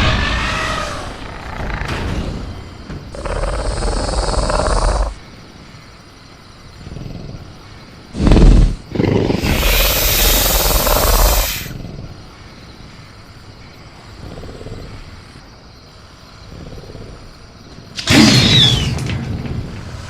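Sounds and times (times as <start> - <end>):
loud cry with falling screech: 0.0 - 1.3
low jungle ambience: 0.0 - 20.0
hissing dinosaur snarl: 3.1 - 5.2, 6.8 - 12.2.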